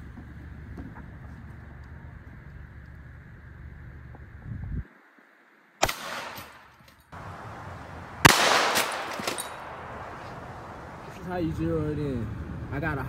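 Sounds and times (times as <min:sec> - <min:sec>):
gunshots with echo: 0:05.8 - 0:06.6, 0:07.2 - 0:11.2.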